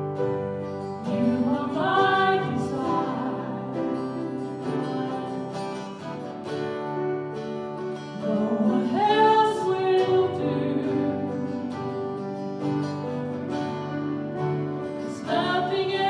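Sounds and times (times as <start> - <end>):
strummed acoustic guitar: 0.0 - 16.0
person singing: 0.8 - 6.7, 8.0 - 12.8, 14.9 - 16.0.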